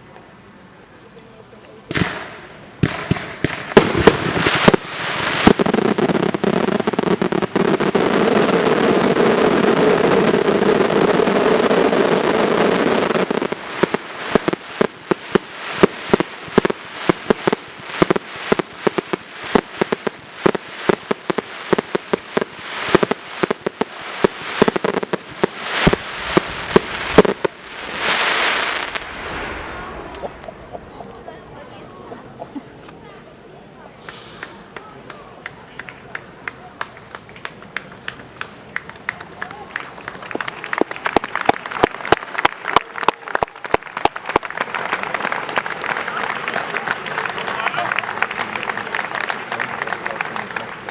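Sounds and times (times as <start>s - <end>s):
fireworks crackling: 0.0s - 50.9s
fireworks bangs: 1.6s - 50.9s
rushing whoosh: 25.8s - 31.2s.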